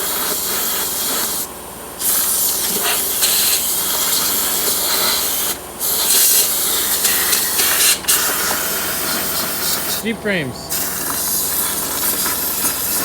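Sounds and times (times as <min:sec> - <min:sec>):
high-pressure nozzle hissing: 0:02.0 - 0:10.0, 0:10.7 - 0:13.0.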